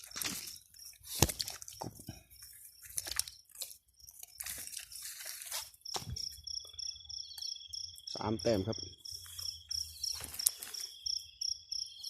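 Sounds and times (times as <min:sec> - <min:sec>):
crunching and rustling: 0:00.0 - 0:06.5, 0:09.1 - 0:11.1.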